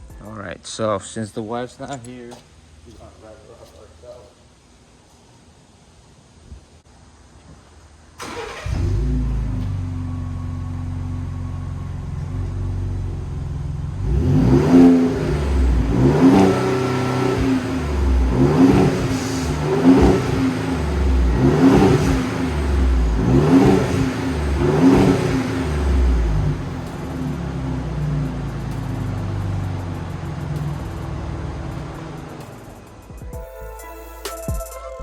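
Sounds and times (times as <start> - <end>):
truck engine idling and revving: 8.2 - 33.3.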